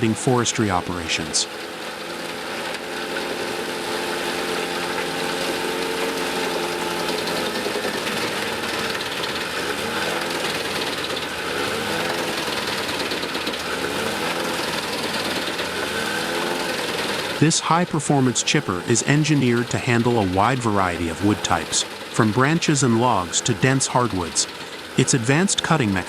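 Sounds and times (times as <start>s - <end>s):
wood chipper and tractor engine: 0.0s - 26.0s.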